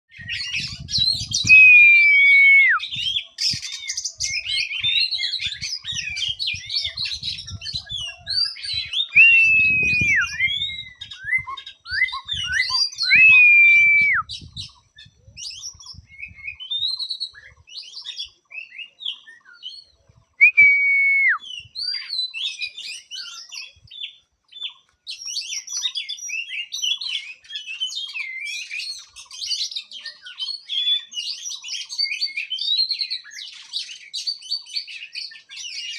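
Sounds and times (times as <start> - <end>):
songbird singing: 0.1 - 35.9.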